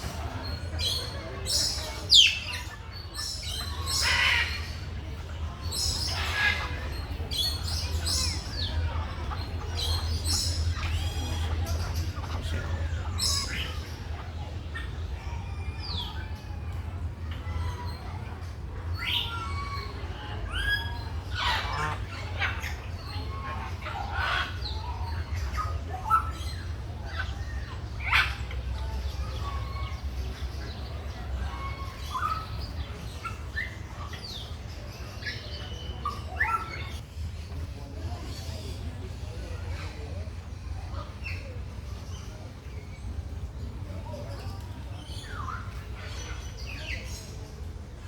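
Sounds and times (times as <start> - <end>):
birds calling: 0.0 - 18.2, 18.8 - 37.6.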